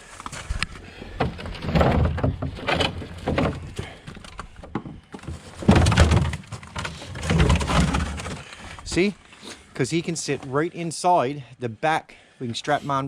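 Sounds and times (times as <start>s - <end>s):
car parts knocking and scraping: 0.2s - 9.1s.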